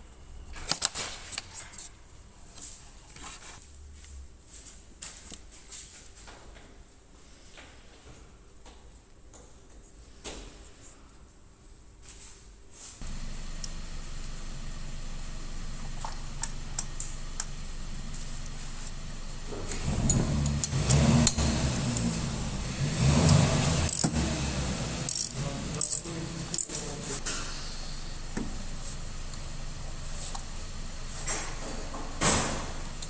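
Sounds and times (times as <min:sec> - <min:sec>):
steady low hum: 0:13.0 - 0:33.0.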